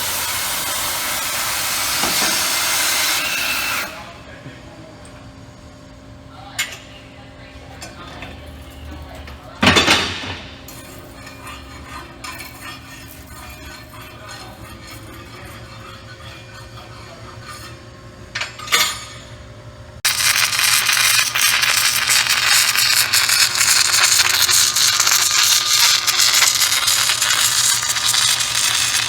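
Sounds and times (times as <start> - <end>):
welding arc crackling hiss: 0.0 - 4.0, 20.0 - 29.0
welding equipment humming: 0.0 - 4.2, 20.0 - 29.0.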